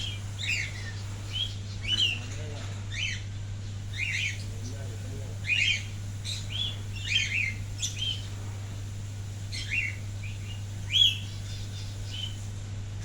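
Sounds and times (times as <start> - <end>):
parrot chirping and squeaking: 0.0 - 2.2
steady low hum: 0.0 - 13.0.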